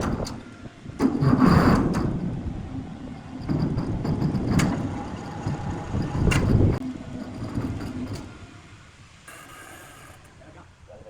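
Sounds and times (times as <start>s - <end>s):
heavy engine rumble: 0.0s - 9.2s.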